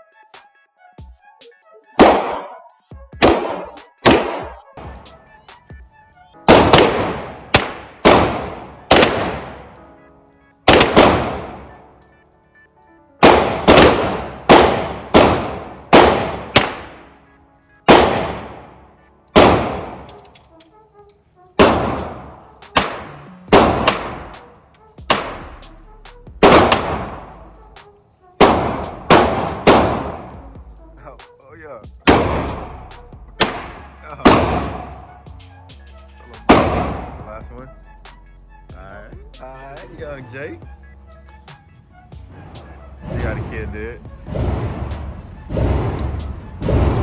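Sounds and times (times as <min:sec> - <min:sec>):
pistol shots ringing: 0:02.0 - 0:02.6, 0:03.2 - 0:05.4, 0:06.4 - 0:10.0, 0:10.6 - 0:12.1, 0:13.2 - 0:20.6, 0:21.6 - 0:25.6, 0:26.4 - 0:27.7, 0:28.4 - 0:30.6, 0:32.0 - 0:32.8, 0:33.4 - 0:35.2, 0:36.4 - 0:37.2.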